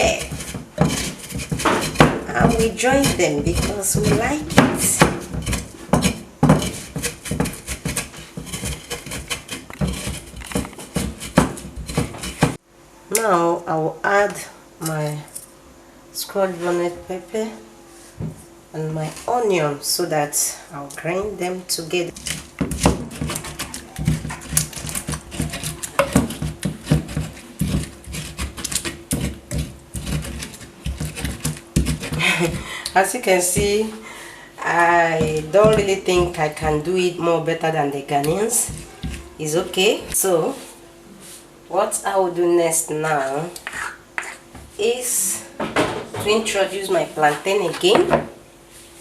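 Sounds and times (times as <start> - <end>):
knocks and wet crushing strokes: 0.0 - 12.6, 22.1 - 33.9, 34.7 - 37.0, 38.0 - 40.7
pestle pounding in a bowl: 0.0 - 12.6, 22.1 - 32.7, 33.5 - 33.8, 34.8 - 37.1, 38.2 - 40.2.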